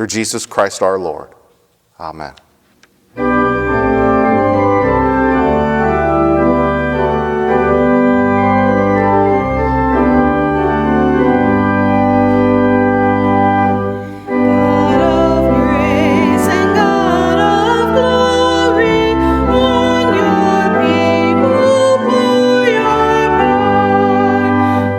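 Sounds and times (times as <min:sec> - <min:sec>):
organ playing sustained chords: 0:03.1 - 0:24.9
person singing: 0:14.2 - 0:24.9.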